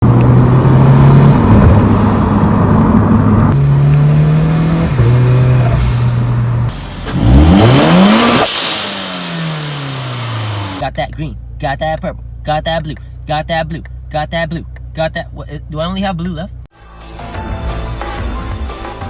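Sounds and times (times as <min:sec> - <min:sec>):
turbocharged car engine revving: 0:00.0 - 0:10.8.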